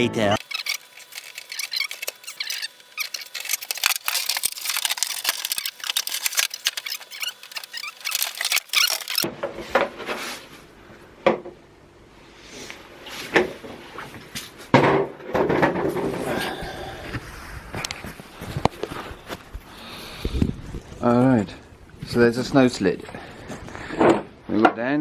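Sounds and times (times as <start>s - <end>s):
crackling and rustling of handling: 0.4s - 10.6s, 17.2s - 24.3s.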